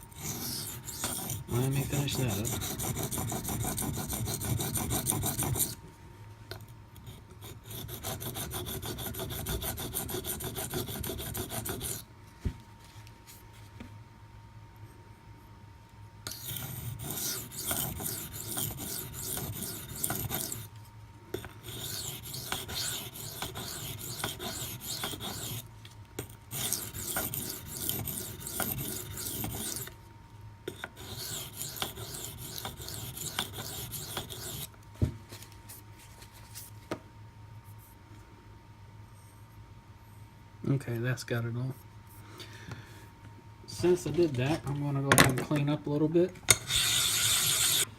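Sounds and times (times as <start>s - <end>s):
knife blade scraping on whetstone: 0.1s - 5.8s, 16.3s - 20.7s, 21.4s - 25.6s, 26.5s - 29.9s, 30.7s - 34.7s, 46.5s - 47.9s.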